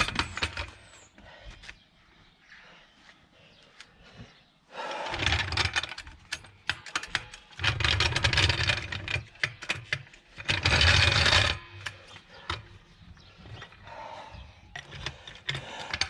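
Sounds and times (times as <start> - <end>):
trolley jack scraping: 5.1 - 13.8.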